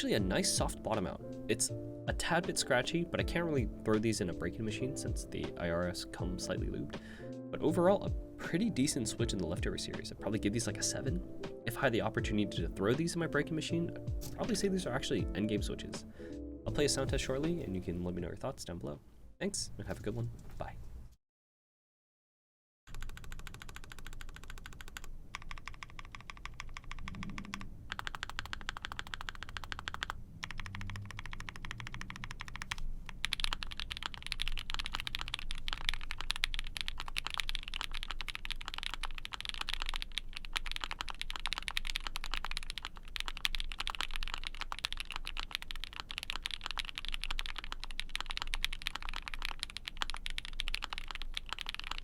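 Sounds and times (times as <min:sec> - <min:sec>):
mechanical keyboard typing: 0:22.9 - 0:52.0.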